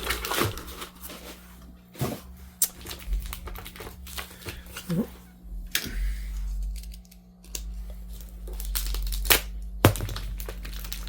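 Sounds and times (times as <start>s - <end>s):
packing crinkling and tearing: 0.0s - 1.4s, 2.6s - 5.0s, 6.4s - 11.0s.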